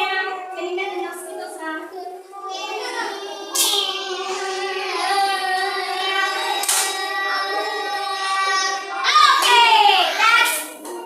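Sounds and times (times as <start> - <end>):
children humming like a mosquito: 1.9 - 9.4.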